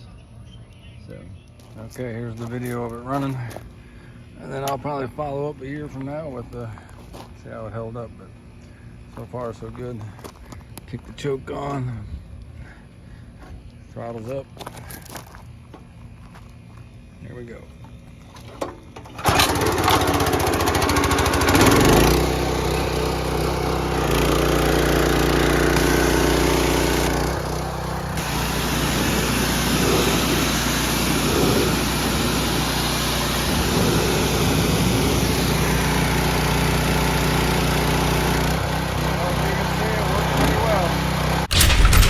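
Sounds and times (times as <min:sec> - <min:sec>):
pressure washer engine running: 0:18.4 - 0:42.0.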